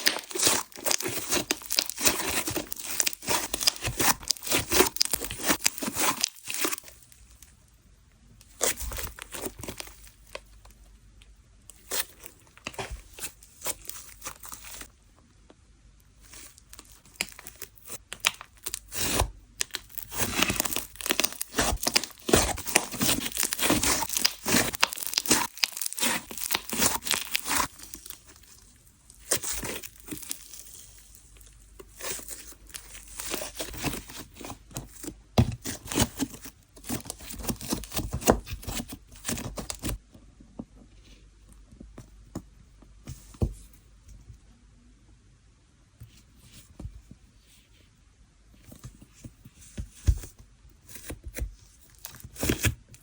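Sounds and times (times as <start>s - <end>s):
slime squished gritty crackling: 0.0s - 7.1s, 16.8s - 30.8s.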